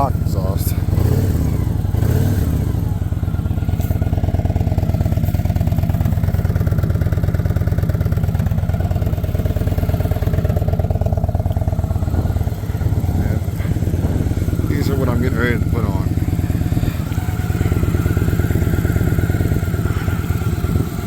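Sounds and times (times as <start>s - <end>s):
motorcycle engine idling: 0.0s - 21.0s.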